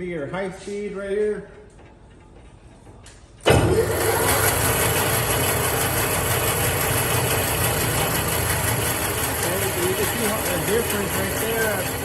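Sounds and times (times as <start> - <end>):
bandsaw whirring: 3.5 - 12.0.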